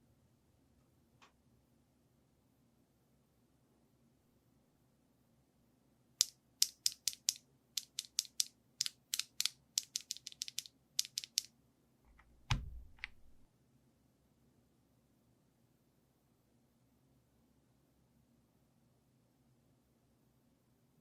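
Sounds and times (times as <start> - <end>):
mechanical keyboard keystrokes: 6.6 - 11.5, 12.1 - 13.4
heavy keyboard thump: 12.1 - 13.4.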